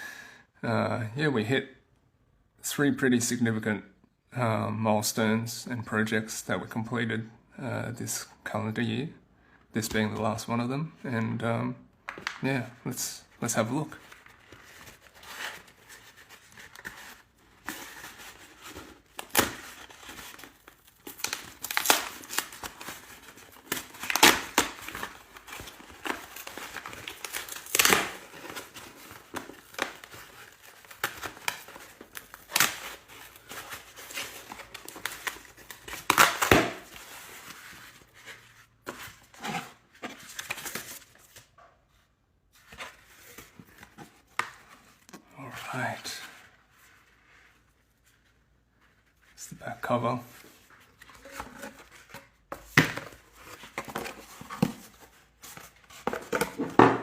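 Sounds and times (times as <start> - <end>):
packaging tearing and crinkling: 17.9 - 37.5.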